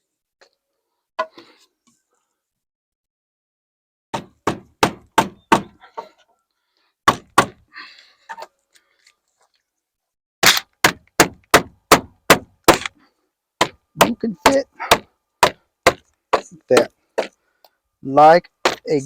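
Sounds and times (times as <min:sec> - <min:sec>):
hammer striking nails into wood: 0:04.1 - 0:05.8, 0:07.1 - 0:07.6, 0:10.4 - 0:13.0, 0:13.6 - 0:17.3.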